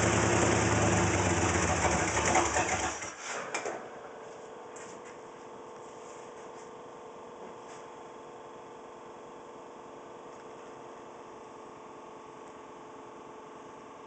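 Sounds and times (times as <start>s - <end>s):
engine idling roughly: 0.0s - 3.1s.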